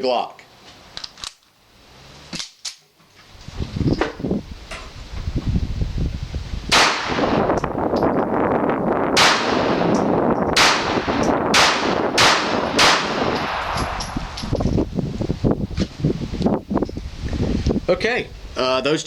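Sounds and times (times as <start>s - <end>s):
pistol shots with echo: 6.7s - 7.5s, 9.2s - 14.4s.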